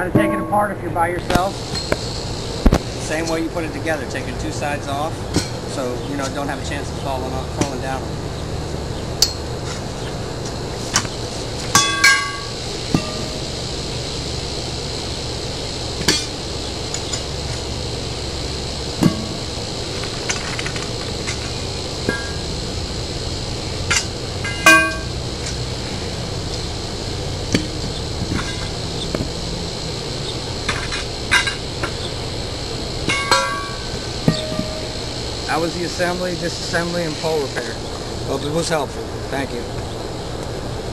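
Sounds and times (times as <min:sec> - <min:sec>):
metal poles knocking and clinking: 0:00.0 - 0:00.8, 0:11.8 - 0:13.2, 0:23.9 - 0:25.2, 0:33.1 - 0:34.9
background hiss and hum: 0:00.0 - 0:40.9.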